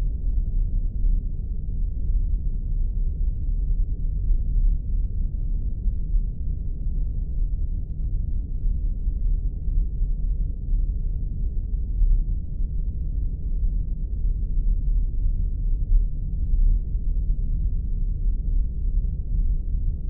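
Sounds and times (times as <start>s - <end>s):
deep bass rumble: 0.0s - 20.0s.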